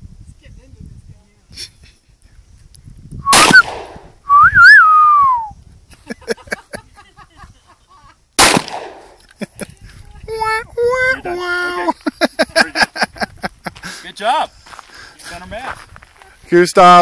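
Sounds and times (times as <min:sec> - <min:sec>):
pistol shots: 0:03.3 - 0:04.1, 0:08.4 - 0:09.2
person whistling: 0:04.3 - 0:05.6.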